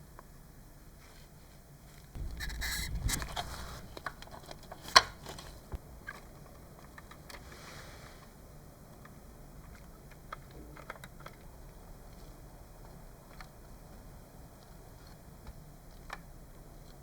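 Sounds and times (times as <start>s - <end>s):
low rumbling scuff: 2.2s - 6.0s.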